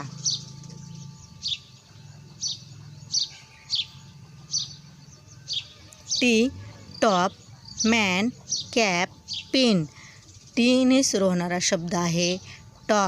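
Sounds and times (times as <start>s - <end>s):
bird chirping: 0.0s - 13.0s.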